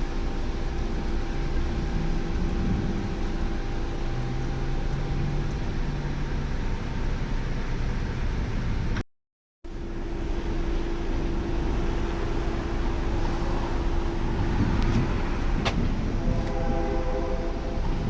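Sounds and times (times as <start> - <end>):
car road and engine noise: 0.0 - 9.0, 9.7 - 18.0
car horn: 16.2 - 18.0.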